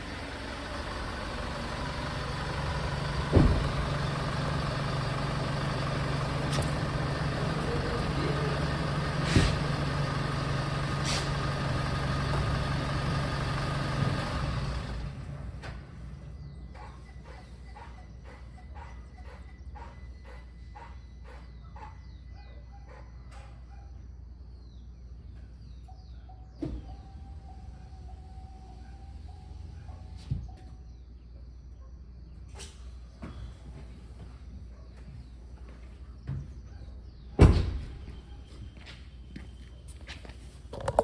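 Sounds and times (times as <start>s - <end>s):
pickup truck engine humming: 0.0s - 21.4s
knocks: 3.3s - 3.8s.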